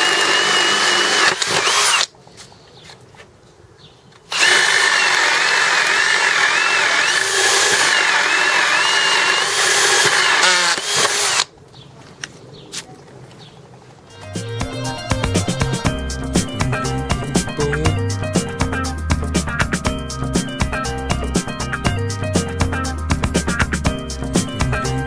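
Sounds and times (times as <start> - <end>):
cordless power tool motor whine: 0.0 - 2.1, 4.3 - 11.5.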